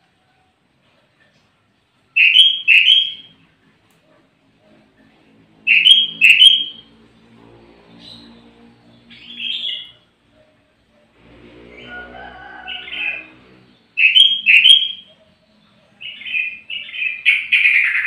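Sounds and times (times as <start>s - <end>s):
bulbul calling: 2.2s - 3.3s, 5.7s - 6.8s, 14.0s - 15.4s.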